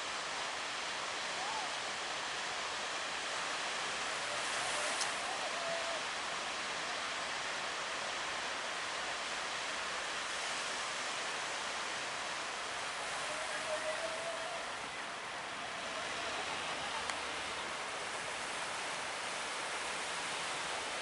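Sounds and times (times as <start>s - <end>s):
sea water streaming past boat: 0.0s - 21.0s
faint voice: 1.4s - 1.8s, 4.7s - 6.1s, 13.2s - 17.3s.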